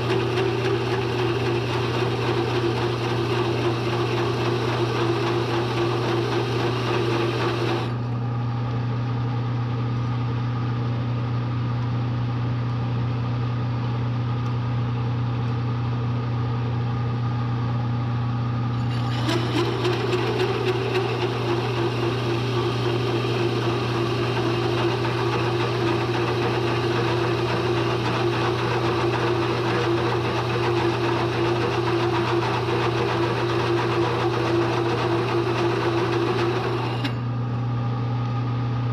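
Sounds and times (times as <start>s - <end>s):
milling machine running: 0.0s - 8.5s, 18.7s - 37.4s
hole saw cutting into steel: 18.8s - 37.2s.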